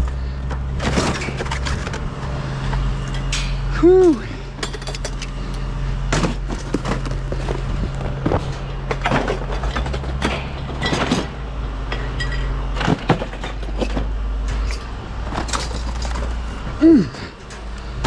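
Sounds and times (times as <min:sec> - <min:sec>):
low hum: 0:00.0 - 0:18.0
scrap metal clinking: 0:08.4 - 0:16.6.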